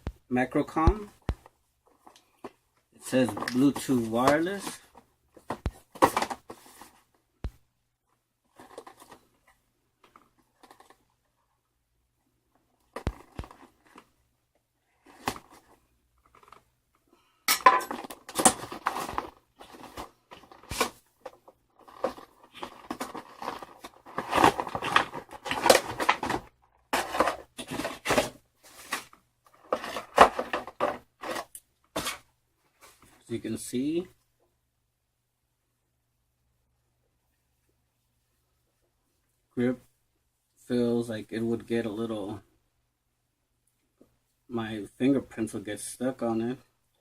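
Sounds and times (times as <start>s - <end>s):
packaging clicks and rustles: 15.0s - 16.6s, 17.9s - 32.2s.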